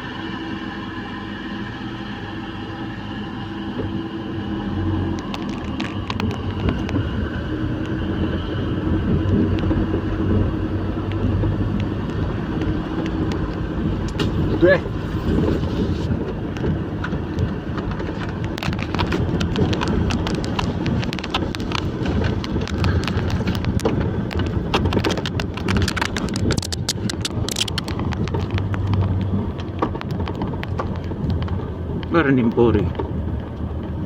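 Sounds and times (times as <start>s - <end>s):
truck engine running: 0.0s - 34.0s
clatter of knocks and ticks: 16.3s - 33.7s.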